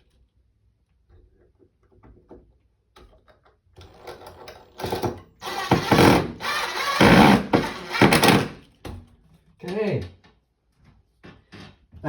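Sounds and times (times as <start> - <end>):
power drill driving screws: 5.4 - 8.6.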